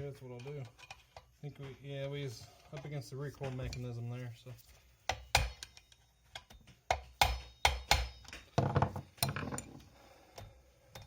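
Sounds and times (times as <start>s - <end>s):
hand tools knocking on metal parts: 5.1s - 9.8s.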